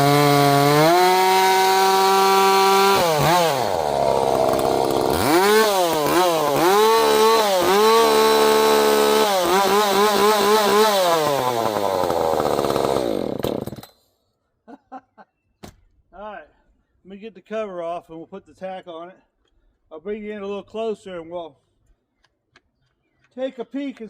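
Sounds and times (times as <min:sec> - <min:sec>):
chainsaw revving: 0:00.0 - 0:13.9.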